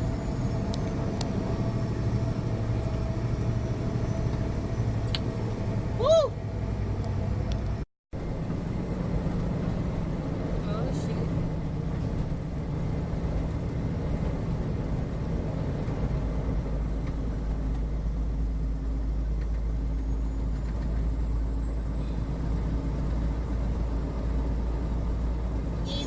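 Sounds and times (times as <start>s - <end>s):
truck engine drone: 0.0s - 26.0s
tyres on road: 0.0s - 26.0s.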